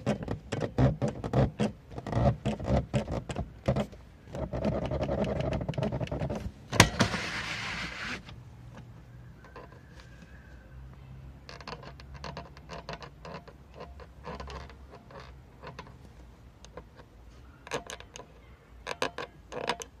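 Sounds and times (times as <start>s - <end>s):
roller cover creaking and clicking: 0.0s - 8.9s, 11.4s - 16.0s
steady sliding sound: 6.2s - 8.4s.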